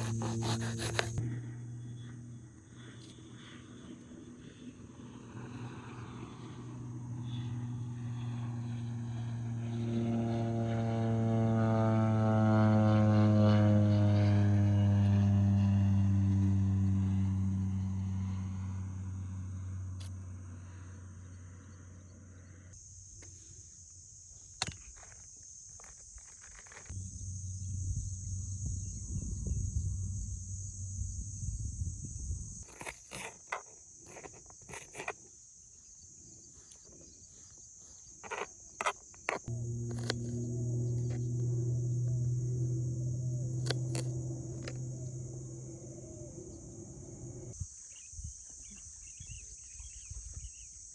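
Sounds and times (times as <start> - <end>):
low steady hum: 0.0 - 22.8, 26.9 - 33.3, 39.4 - 47.6.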